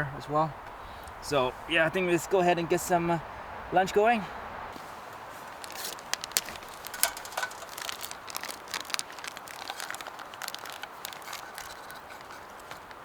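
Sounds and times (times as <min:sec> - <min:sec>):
food packaging crinkling: 0:05.1 - 0:13.0.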